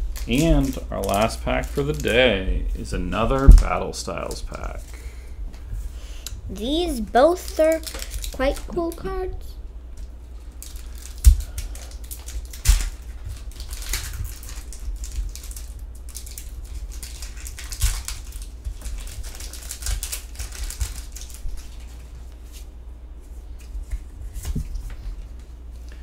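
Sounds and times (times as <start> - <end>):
foil pack tearing and crinkling: 0.0 - 2.5, 7.2 - 9.0, 10.4 - 22.7.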